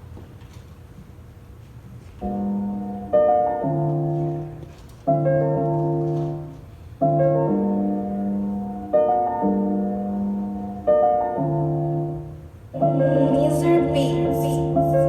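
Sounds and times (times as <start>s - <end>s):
piano playing slow chords: 2.2s - 15.0s.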